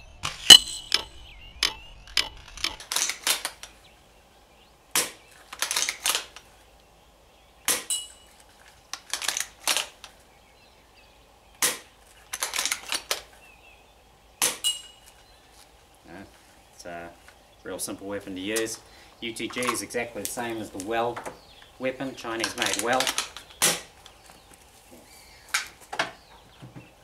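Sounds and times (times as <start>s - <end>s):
airsoft rifle shots: 14.4s - 14.8s, 22.5s - 23.9s.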